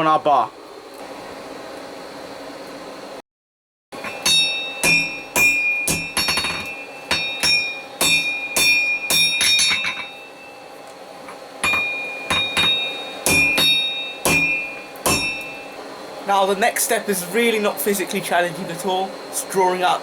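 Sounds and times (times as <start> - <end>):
hammer striking steel on anvil: 4.0 - 10.6, 11.6 - 15.8
anvil ringing: 4.0 - 10.7, 11.6 - 15.8.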